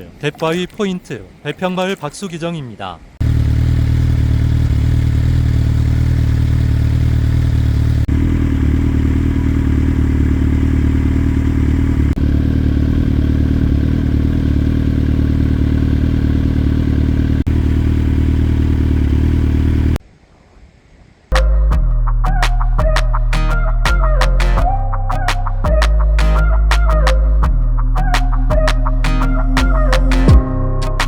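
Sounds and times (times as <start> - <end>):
engine running steadily: 3.2 - 20.0.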